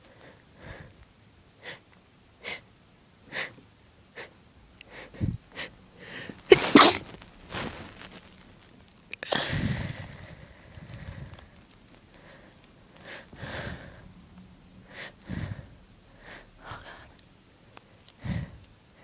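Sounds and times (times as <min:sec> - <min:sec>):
catching inhales: 0:04.2 - 0:06.4
breathy burst: 0:04.9 - 0:08.5, 0:09.2 - 0:14.2, 0:14.8 - 0:17.2
person sneezing: 0:06.5 - 0:07.8.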